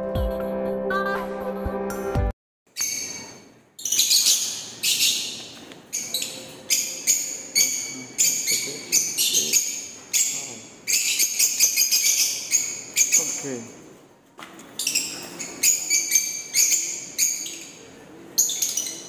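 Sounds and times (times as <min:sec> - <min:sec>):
shrill bird calls: 0:02.7 - 0:13.6, 0:14.8 - 0:17.8.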